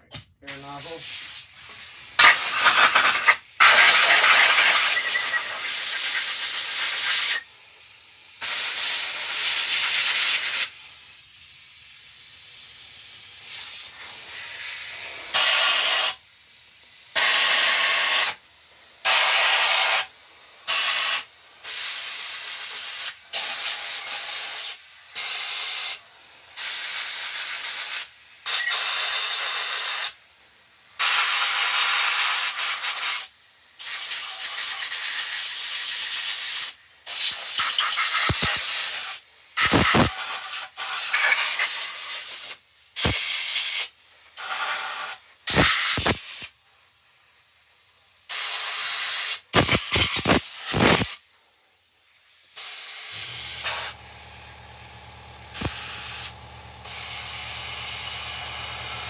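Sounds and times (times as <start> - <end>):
compressed air blow gun hissing: 0.5 - 7.4, 31.0 - 46.5, 48.3 - 51.2, 52.6 - 59.0.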